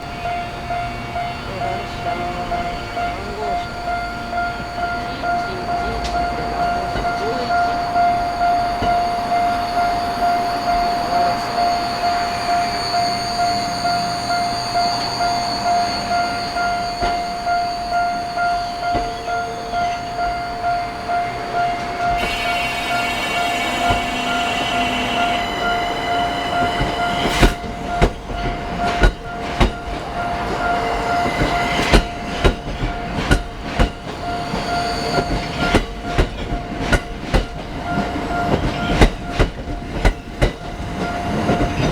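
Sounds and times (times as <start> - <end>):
train high whine: 0.0 - 41.9
level crossing bell ringing: 0.1 - 36.2
train wheels clacking over rail joints: 21.6 - 41.9.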